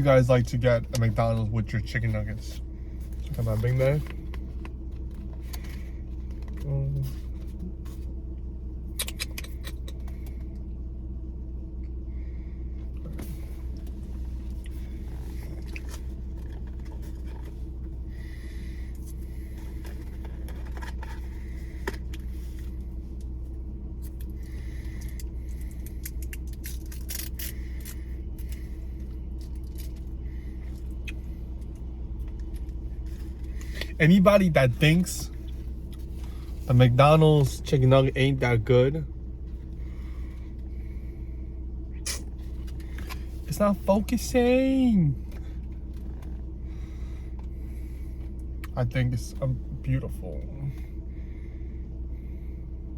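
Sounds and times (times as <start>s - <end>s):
car cabin engine hum: 0.0s - 52.9s.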